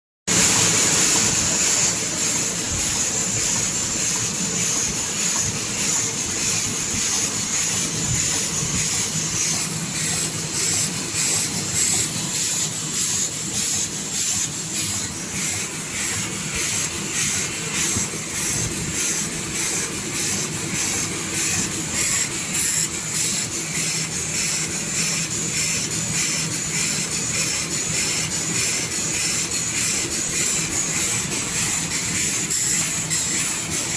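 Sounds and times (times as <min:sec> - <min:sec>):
packing machine running: 0:00.3 - 0:14.2.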